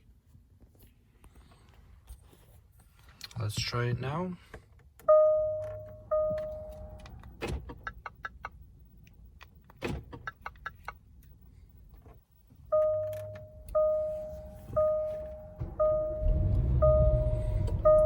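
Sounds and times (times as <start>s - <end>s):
car warning chime beeping: 5.0s - 7.1s, 12.7s - 18.0s.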